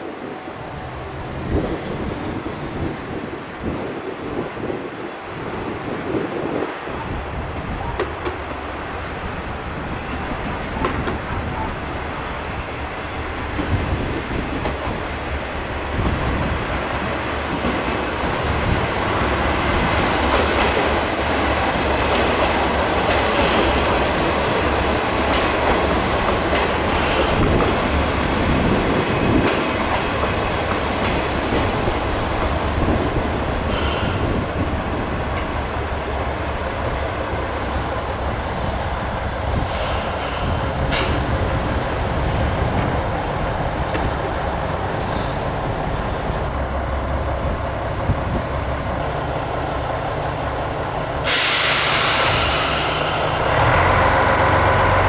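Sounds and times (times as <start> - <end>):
diesel train passing: 0.0 - 55.0
high wheel squeal: 31.1 - 34.8, 37.2 - 41.2, 51.3 - 54.0.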